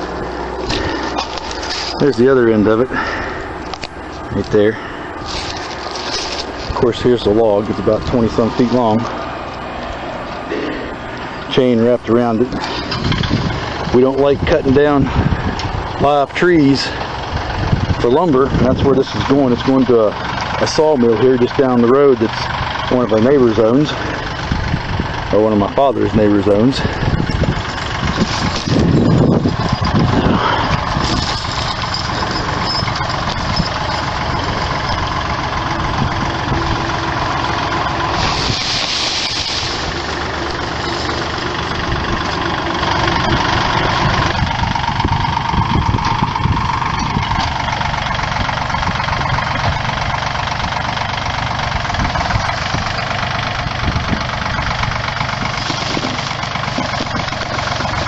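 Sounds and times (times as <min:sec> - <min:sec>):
tractor engine running: 0:00.0 - 0:58.0.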